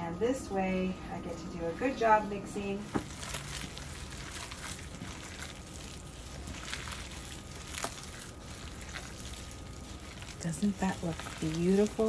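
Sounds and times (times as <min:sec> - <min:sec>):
hands squishing meat mixture: 0:02.9 - 0:12.0.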